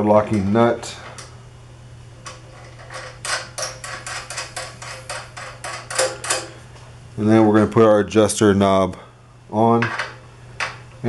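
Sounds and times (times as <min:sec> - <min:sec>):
metal nut clicking and rattling: 0:02.3 - 0:06.6.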